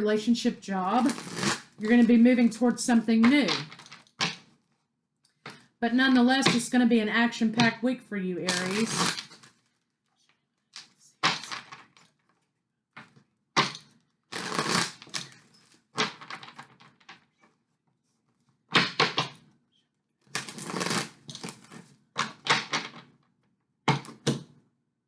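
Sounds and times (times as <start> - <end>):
cards being shuffled: 8.5 - 9.7, 13.0 - 17.2, 20.3 - 23.1.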